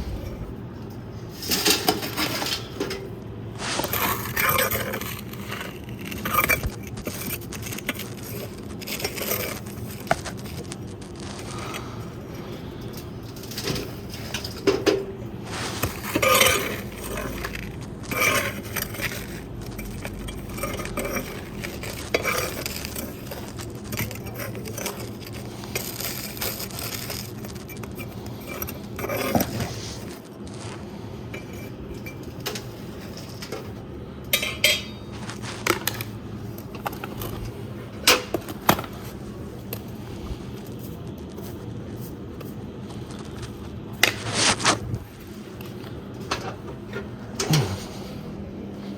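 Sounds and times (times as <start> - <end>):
metal tool scraping metal firebox: 13.3 - 25.0.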